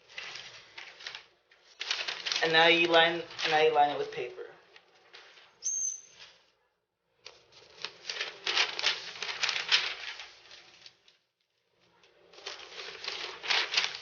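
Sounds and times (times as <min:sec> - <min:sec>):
paper rustling and crinkling: 0:00.0 - 0:06.5, 0:07.2 - 0:14.0.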